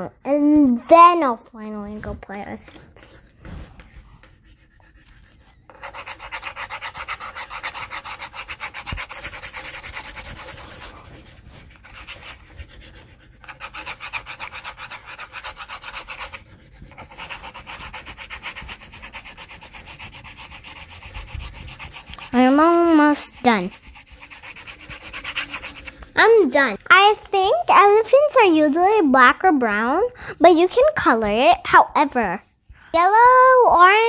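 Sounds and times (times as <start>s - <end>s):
drawing tool scribbling on paper: 2.6s - 28.8s.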